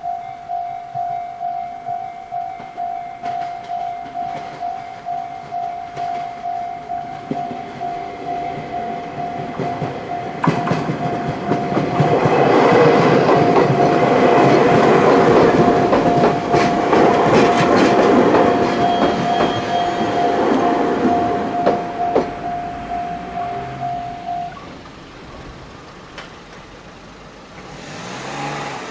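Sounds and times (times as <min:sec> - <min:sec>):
level crossing alarm ringing: 0:00.0 - 0:25.2
train wheels clacking over rail joints: 0:02.6 - 0:23.9.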